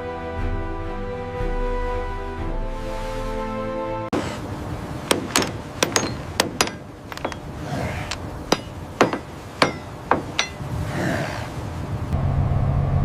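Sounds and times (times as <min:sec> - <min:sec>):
low steady hum: 0:04.2 - 0:13.0
sharp metallic knocks: 0:05.1 - 0:10.7.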